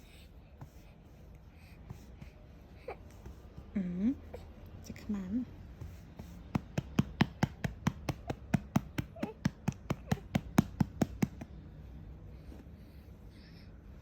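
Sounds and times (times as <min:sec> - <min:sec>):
hand patting baby's back: 0:05.8 - 0:11.6.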